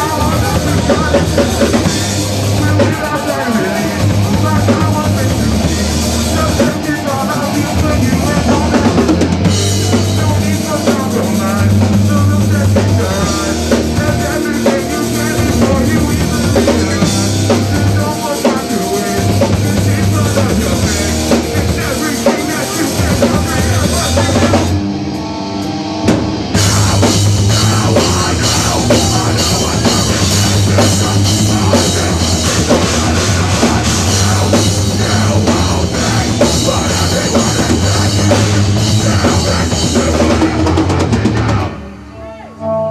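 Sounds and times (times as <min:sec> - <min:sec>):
rock band playing: 0:00.0 - 0:42.9.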